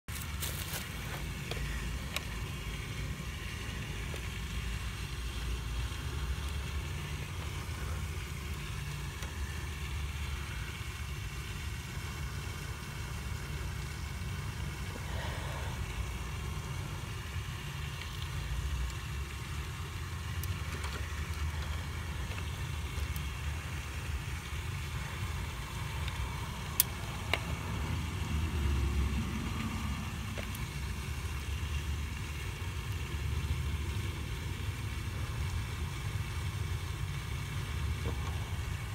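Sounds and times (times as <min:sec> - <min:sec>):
engine running low rumble: 0:00.0 - 0:38.9.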